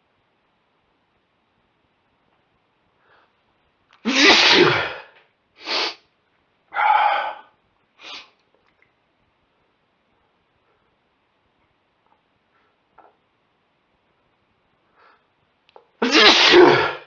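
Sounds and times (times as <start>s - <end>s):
man sneezing: 4.0s - 5.1s, 16.0s - 17.0s.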